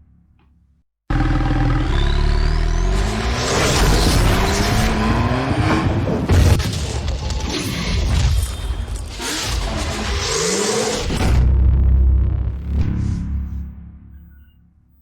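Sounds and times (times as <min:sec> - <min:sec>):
cinematic music: 0:11.0 - 0:14.9.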